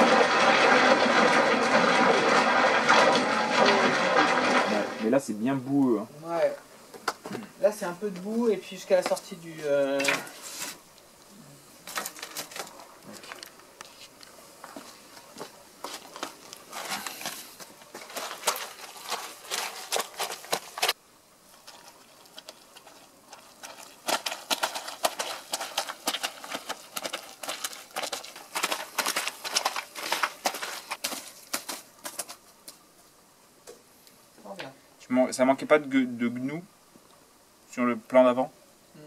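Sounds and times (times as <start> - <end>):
hoofbeats squelching in mud: 14.9 - 32.4.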